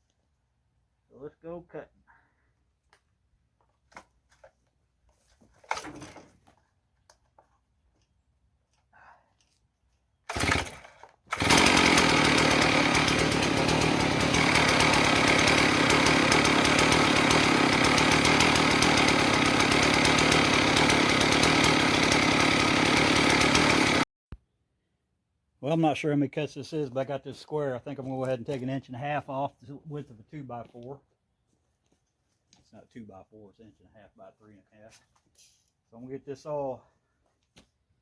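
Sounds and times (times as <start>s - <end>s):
chainsaw cutting wood: 10.3s - 24.0s.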